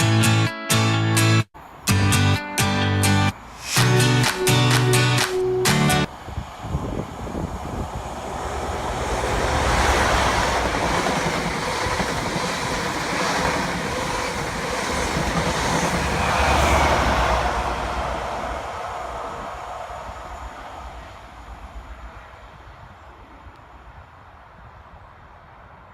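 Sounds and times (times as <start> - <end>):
train wheels clattering on rails: 9.0 - 18.9.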